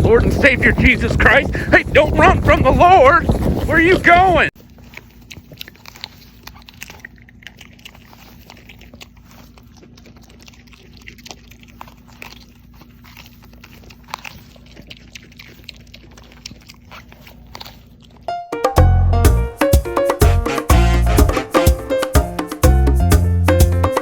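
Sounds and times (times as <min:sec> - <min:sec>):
animal chewing crunchy food: 0:00.0 - 0:18.5.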